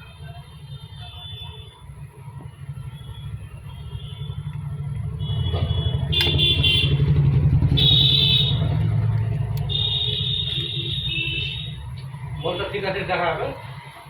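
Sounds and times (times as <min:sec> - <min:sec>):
vehicle engine rumbling past: 0:02.4 - 0:14.0
high-pitched horn honks: 0:05.1 - 0:08.8, 0:09.6 - 0:12.8.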